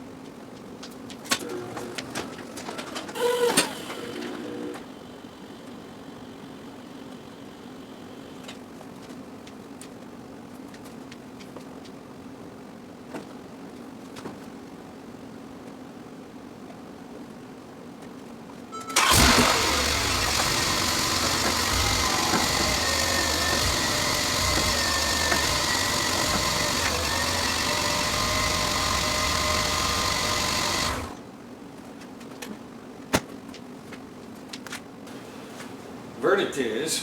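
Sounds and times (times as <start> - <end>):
machine running with high whine: 19.1 - 31.2.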